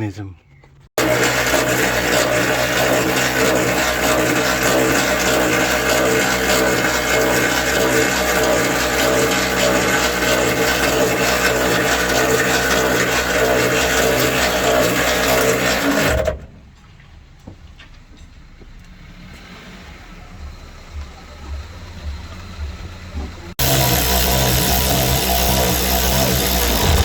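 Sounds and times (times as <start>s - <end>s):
power drill running: 1.0s - 16.3s, 23.5s - 27.0s.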